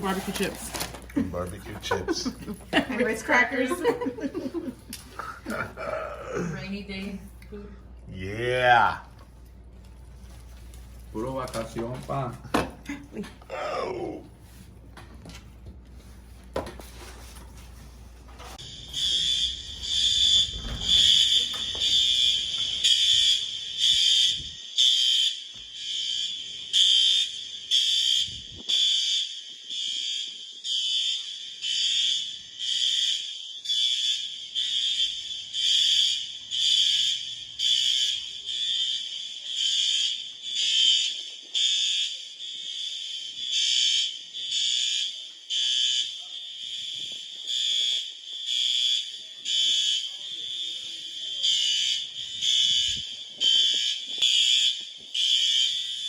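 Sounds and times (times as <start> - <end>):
fire alarm beeping: 1.4 - 5.6, 18.4 - 56.0.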